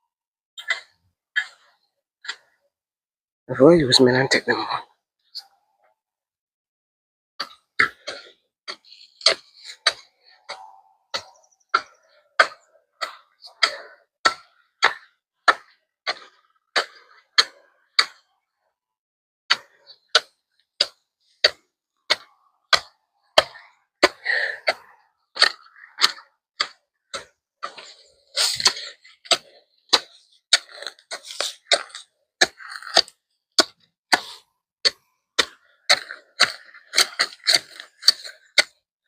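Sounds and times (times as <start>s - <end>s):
hand tool striking soil: 7.4s - 18.2s, 19.5s - 24.8s, 25.4s - 38.8s.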